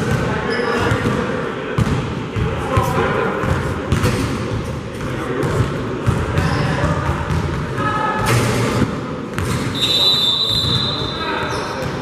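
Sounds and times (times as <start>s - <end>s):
basketball bouncing on court: 0.0s - 1.2s, 1.8s - 9.8s
gym background noise: 0.0s - 12.0s.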